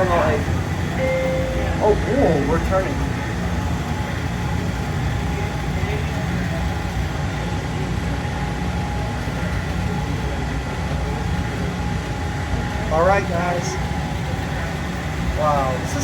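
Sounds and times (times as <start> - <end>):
faint whining tones: 0.0 - 3.7
train car rumbling: 0.0 - 16.0.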